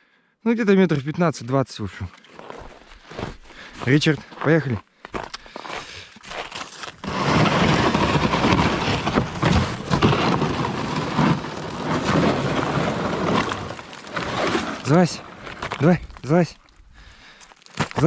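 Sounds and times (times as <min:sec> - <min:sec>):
plastic sled scraping over ice: 0:05.6 - 0:16.8.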